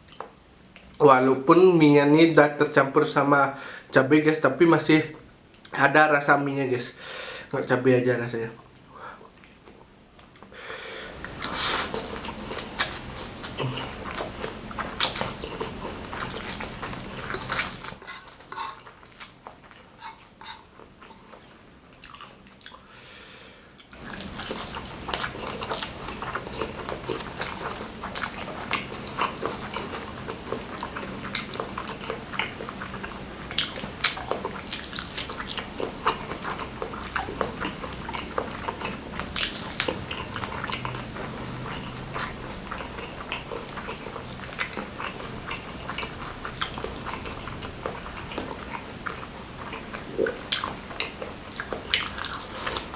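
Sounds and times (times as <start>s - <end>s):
chewing noodles: 11.1s - 22.9s, 23.8s - 52.9s.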